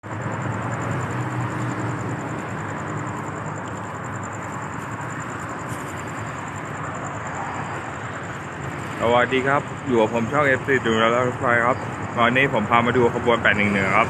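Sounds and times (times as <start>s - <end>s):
low engine hum: 0.0s - 9.9s
vehicle rumble: 0.0s - 14.0s.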